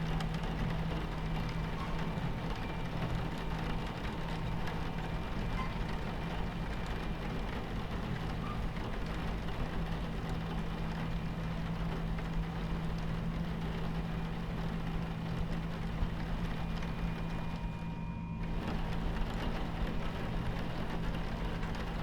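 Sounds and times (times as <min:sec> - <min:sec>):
rain ticking on window: 0:00.0 - 0:22.0
train rumbling: 0:00.0 - 0:22.0.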